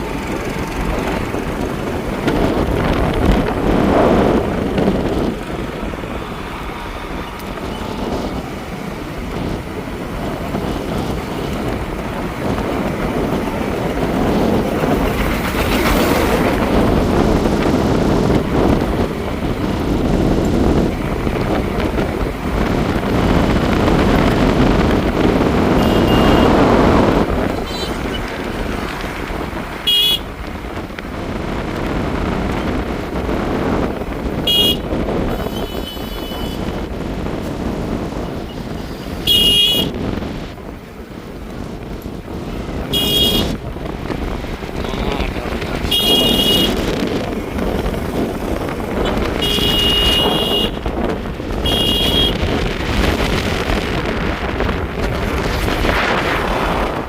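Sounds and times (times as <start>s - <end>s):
motorbike road and wind noise: 0.0s - 57.0s
short high horn beeps: 25.8s - 26.5s, 49.4s - 50.8s.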